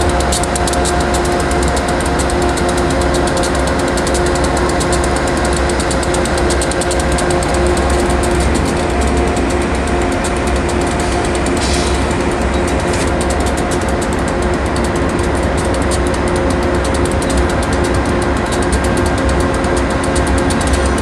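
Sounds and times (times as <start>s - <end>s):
diesel locomotive engine running: 0.0s - 21.0s.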